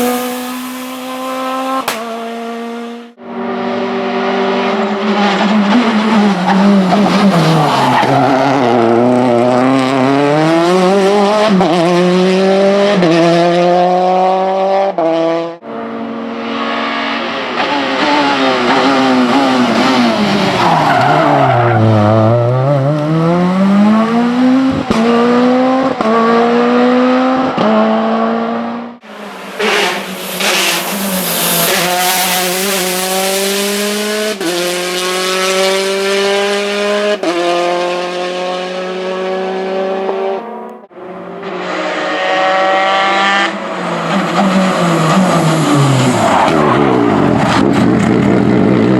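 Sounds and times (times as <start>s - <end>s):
engine hiss: 0.0s - 1.8s, 29.0s - 34.4s
rally car engines: 0.0s - 48.9s.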